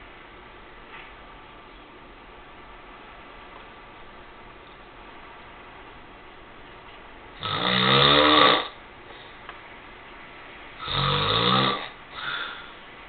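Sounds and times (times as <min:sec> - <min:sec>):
man snoring: 0:07.4 - 0:08.8, 0:10.8 - 0:12.6.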